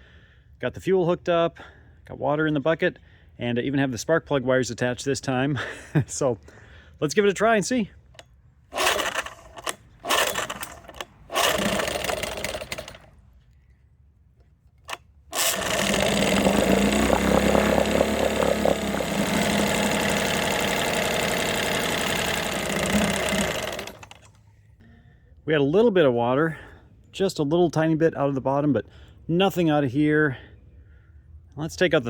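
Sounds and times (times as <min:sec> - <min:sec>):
recoil starter pulls: 0:08.1 - 0:13.2, 0:14.7 - 0:24.4
outboard motor idling: 0:15.4 - 0:24.3.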